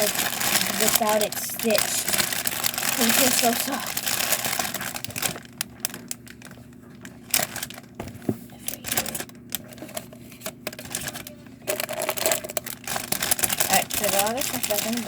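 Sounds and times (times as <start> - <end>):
faint hum: 0.0 - 15.0
packaging rustling and clicking: 0.0 - 15.0.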